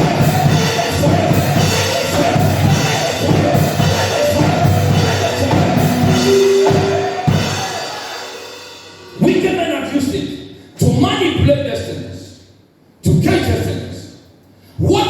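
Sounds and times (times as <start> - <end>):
drum kit beat: 0.0 - 9.2
live band music: 0.0 - 9.2.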